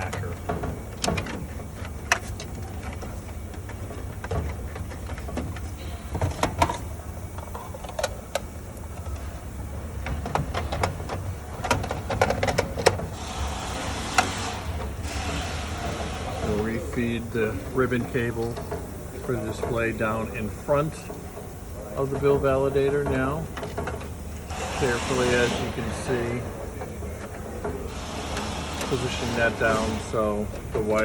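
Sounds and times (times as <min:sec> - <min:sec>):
steady low hum: 0:00.0 - 0:31.0
clicks and knocks of parts handled: 0:10.0 - 0:13.0.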